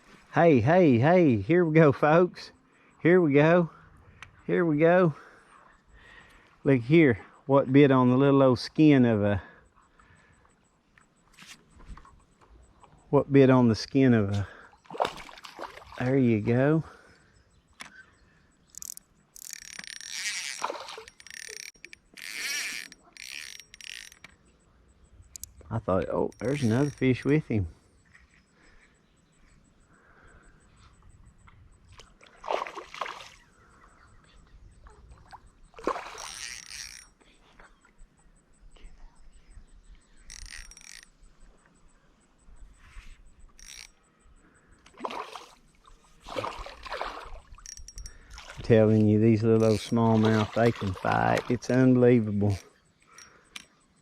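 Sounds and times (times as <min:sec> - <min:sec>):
faint creek ambience: 0:00.0 - 0:54.0
small ticks: 0:09.5 - 0:13.1, 0:17.1 - 0:32.4, 0:33.4 - 0:46.3, 0:47.4 - 0:54.0
fish splashing at water surface: 0:14.9 - 0:16.0, 0:20.6 - 0:21.2, 0:32.3 - 0:33.4, 0:44.9 - 0:45.6, 0:46.2 - 0:48.6
fishing reel gears whirring: 0:18.6 - 0:25.6, 0:26.3 - 0:27.3, 0:35.4 - 0:37.2, 0:39.5 - 0:44.8, 0:47.3 - 0:48.7, 0:49.5 - 0:54.0.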